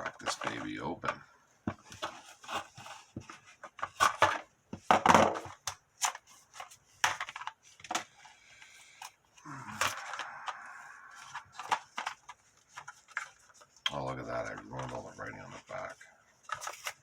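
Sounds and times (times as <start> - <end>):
plastic packaging crackling and snapping: 9.6 - 13.3.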